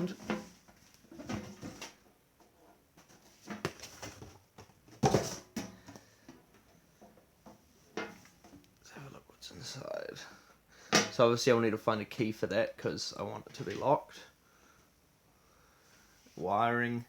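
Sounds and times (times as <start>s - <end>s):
box handling knocks and rustles: 0.1s - 2.0s, 3.0s - 6.0s.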